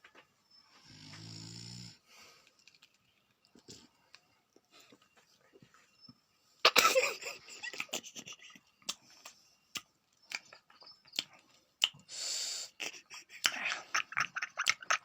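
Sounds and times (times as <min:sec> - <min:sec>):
person snoring with wheezy breaths: 0:00.8 - 0:02.3.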